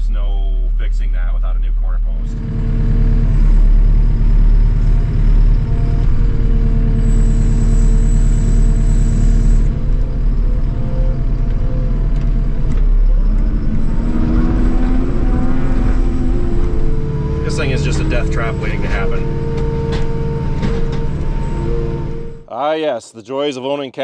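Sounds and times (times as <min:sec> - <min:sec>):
farm vehicle engine rumbling: 0:01.7 - 0:22.5
thin high whine: 0:06.8 - 0:11.2, 0:13.0 - 0:22.5.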